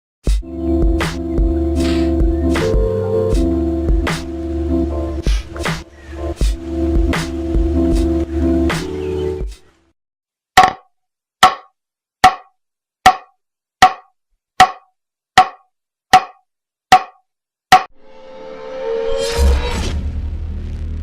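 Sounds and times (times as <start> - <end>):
rubber mallet striking wood: 10.6 - 17.9.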